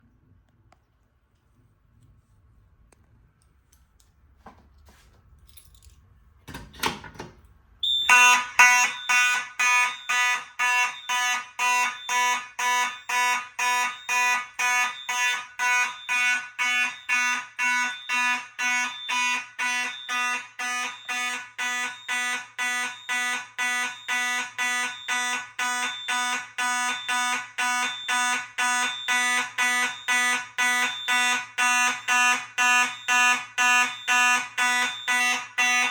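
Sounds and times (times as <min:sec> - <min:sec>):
fire alarm horn pulsing: 0:07.8 - 0:35.9.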